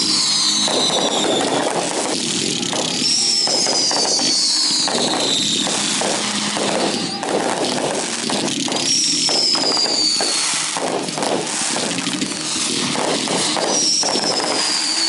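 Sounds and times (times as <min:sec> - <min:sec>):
firework whistles falling in pitch: 0:00.0 - 0:15.0
fireworks crackling and popping: 0:00.0 - 0:15.0.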